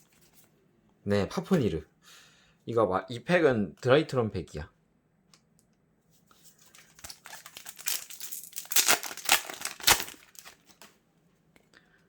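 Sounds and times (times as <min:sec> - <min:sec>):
foil wrapper tearing and crinkling: 0:06.7 - 0:10.9.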